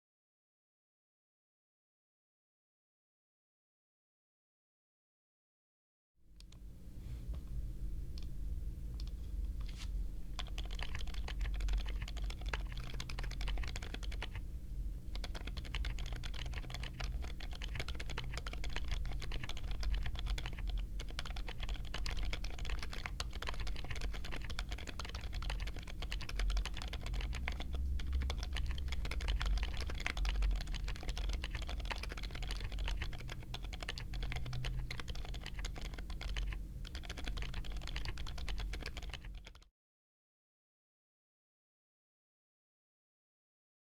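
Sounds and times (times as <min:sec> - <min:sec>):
fast typing on mechanical keyboard: 0:10.4 - 0:14.4, 0:15.1 - 0:39.6.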